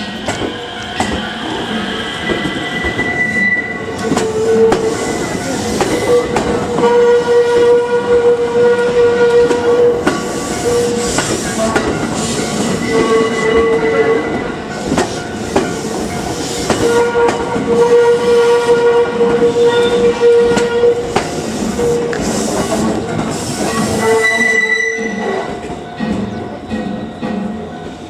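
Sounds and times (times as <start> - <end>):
crossing warning tone ringing: 0.0 - 28.0
train rumble: 0.0 - 28.0
train wheels clicking over rail joints: 3.8 - 24.3.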